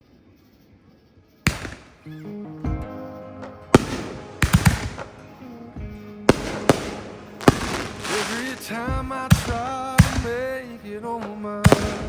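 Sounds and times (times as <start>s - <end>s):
fireworks bursting: 1.5s - 2.2s, 3.4s - 12.0s
background music: 1.5s - 12.0s.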